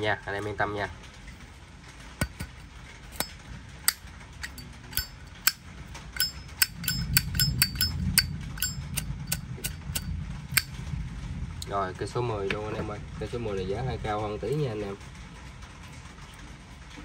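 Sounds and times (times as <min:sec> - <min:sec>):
metallic lighter clicks: 0:03.9 - 0:05.6, 0:06.2 - 0:10.7.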